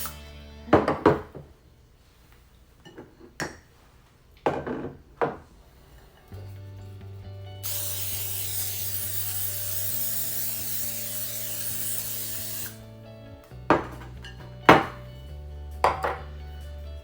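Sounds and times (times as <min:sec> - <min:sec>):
background music: 0:00.0 - 0:01.5, 0:05.6 - 0:17.0
aerosol spray hissing: 0:07.6 - 0:12.9
sharp knocks: 0:13.7 - 0:15.0, 0:15.9 - 0:16.3.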